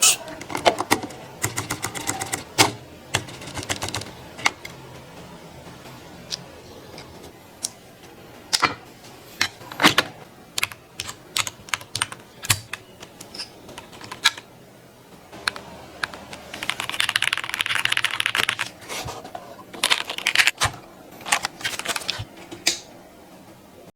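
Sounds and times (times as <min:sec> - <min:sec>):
mechanical keyboard typing: 0:00.3 - 0:04.7, 0:10.6 - 0:14.5, 0:15.4 - 0:18.8, 0:19.8 - 0:20.7.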